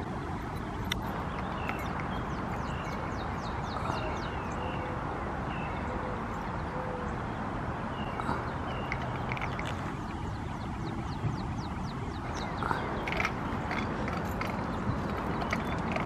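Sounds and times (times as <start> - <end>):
birds chirping: 0.0 - 16.0.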